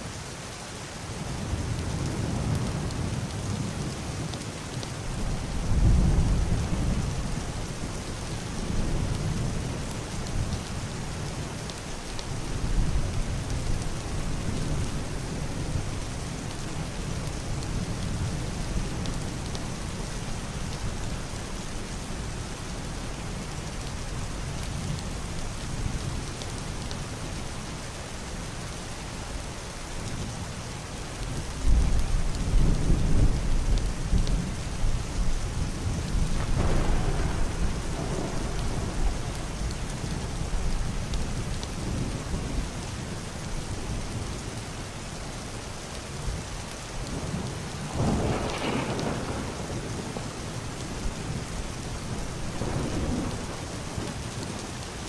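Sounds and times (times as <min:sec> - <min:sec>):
heavy rain on roof and window: 0:00.0 - 0:55.0
thunder rumbling: 0:31.7 - 0:42.5, 0:47.1 - 0:54.7.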